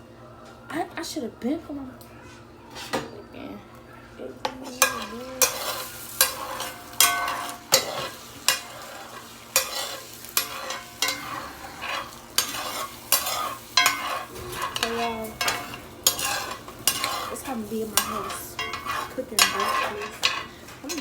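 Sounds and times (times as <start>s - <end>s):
utensil scraping a pan: 2.7s - 3.1s, 4.4s - 21.0s
eggs sizzling in a pan: 4.4s - 21.0s.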